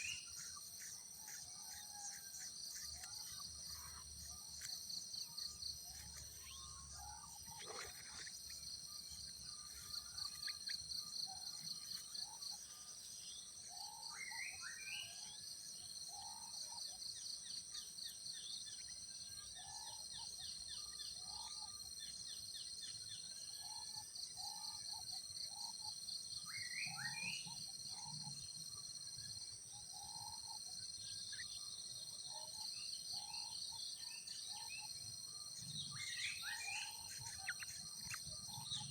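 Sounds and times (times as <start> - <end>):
insect pulsing trill: 32.3 - 38.9.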